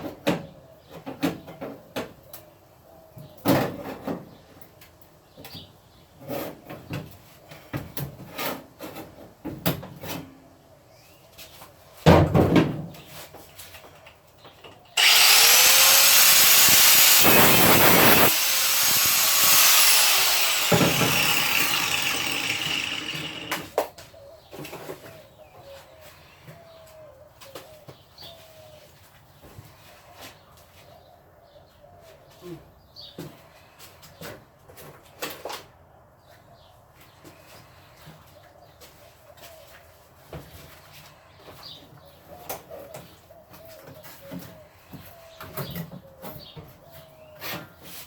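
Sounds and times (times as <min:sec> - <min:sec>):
angle grinder whining: 0:15.0 - 0:23.7.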